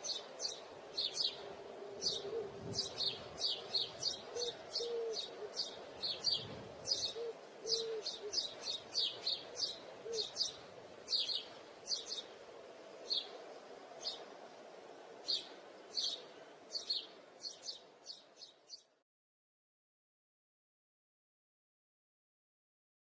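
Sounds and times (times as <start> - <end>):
bird chirping: 0.0 - 12.4, 13.0 - 13.4, 14.0 - 14.3, 15.2 - 19.0.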